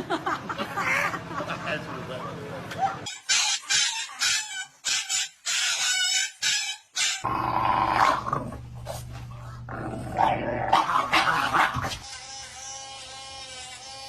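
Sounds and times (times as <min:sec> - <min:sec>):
dog growling and snarling: 0:07.2 - 0:12.0.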